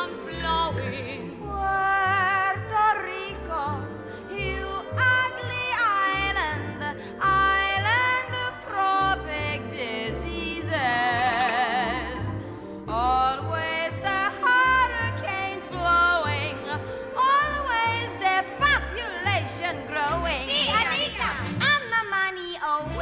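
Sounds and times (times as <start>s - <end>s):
orchestral accompaniment: 0.0s - 21.8s.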